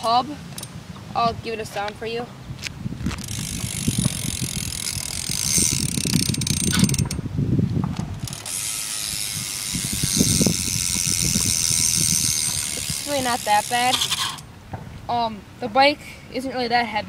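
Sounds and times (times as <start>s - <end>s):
bike hub clicking rapidly: 3.1s - 7.2s, 8.2s - 14.5s.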